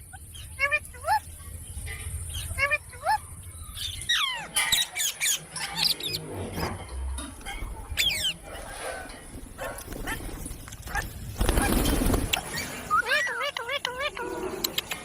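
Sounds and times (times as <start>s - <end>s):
parrots screeching: 2.3s - 6.2s, 7.4s - 8.9s, 10.9s - 15.0s.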